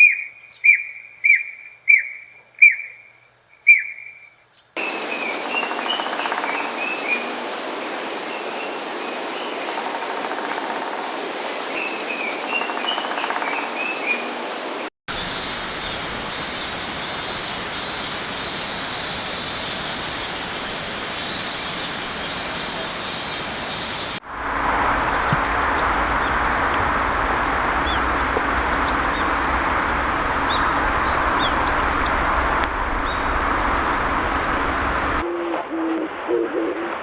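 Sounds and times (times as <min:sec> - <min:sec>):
woodpecker calling: 0:15.1 - 0:36.8
high bird or insect sound: 0:15.1 - 0:37.0
rushing background noise: 0:15.1 - 0:37.0
steady hiss: 0:15.1 - 0:37.0.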